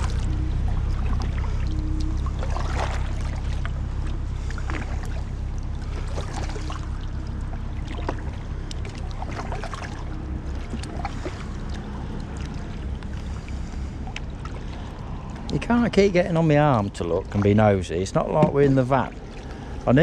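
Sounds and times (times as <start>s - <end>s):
paddle splashing in water: 0.0s - 16.2s, 16.8s - 20.0s
steady low rumble: 0.0s - 20.0s
water dripping: 0.0s - 20.0s
small knocks: 18.3s - 18.7s.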